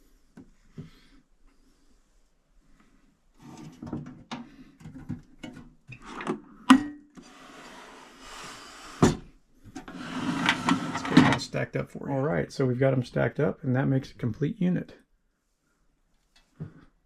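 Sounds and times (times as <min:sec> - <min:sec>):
metal box scraping slide: 0:03.4 - 0:03.8, 0:07.2 - 0:09.0, 0:09.8 - 0:11.4.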